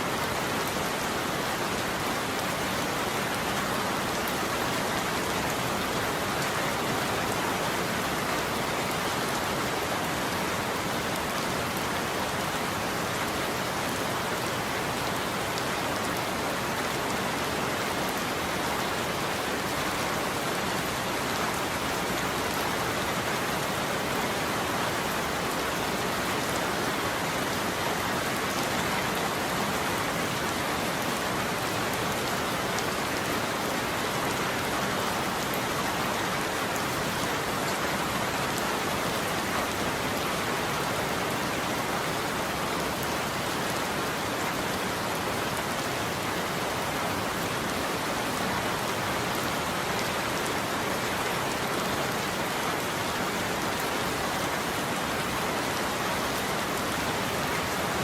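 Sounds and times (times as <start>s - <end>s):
rain on a roof: 0.0s - 58.0s.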